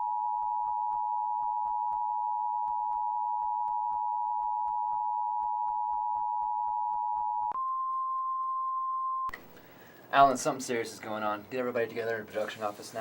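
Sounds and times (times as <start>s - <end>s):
single steady tone: 0.0s - 9.5s.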